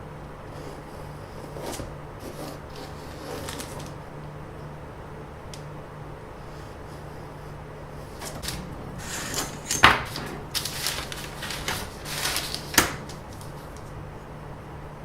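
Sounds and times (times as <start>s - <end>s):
rustling handling noises: 1.1s - 4.0s, 8.0s - 14.1s.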